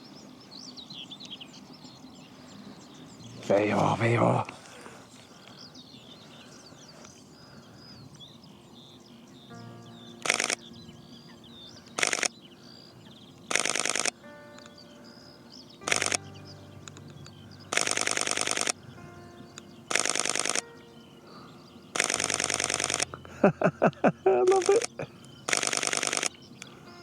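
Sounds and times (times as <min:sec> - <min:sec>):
camera shutter clicking: 0:10.2 - 0:10.6, 0:12.0 - 0:12.3, 0:13.5 - 0:14.2, 0:15.9 - 0:16.2, 0:17.7 - 0:18.8, 0:19.9 - 0:20.6, 0:22.0 - 0:23.1, 0:24.5 - 0:26.4.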